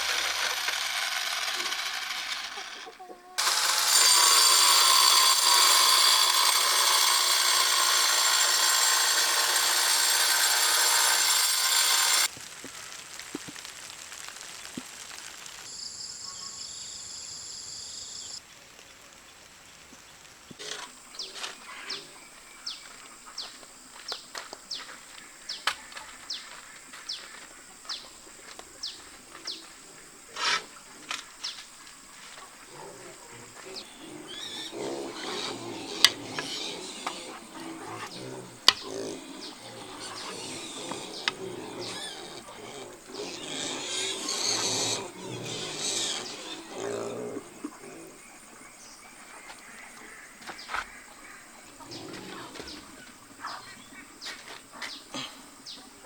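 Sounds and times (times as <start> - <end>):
power tool running: 0.0 - 12.3
short tool strokes: 0.0 - 12.3.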